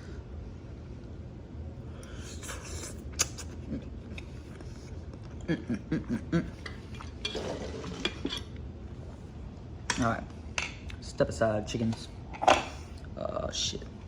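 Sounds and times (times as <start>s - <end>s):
person eating: 2.0s - 8.6s.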